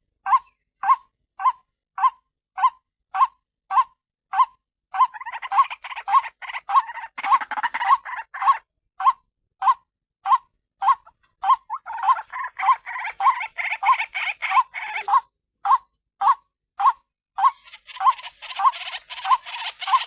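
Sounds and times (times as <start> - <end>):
harsh bird chattering: 5.0 - 8.6, 10.9 - 15.9, 16.8 - 20.0.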